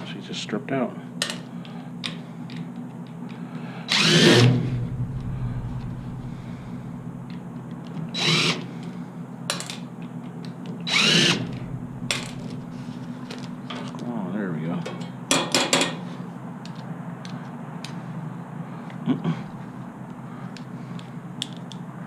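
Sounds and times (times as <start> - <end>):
power drill spinning: 3.9 - 4.8, 8.1 - 8.8, 10.8 - 13.6.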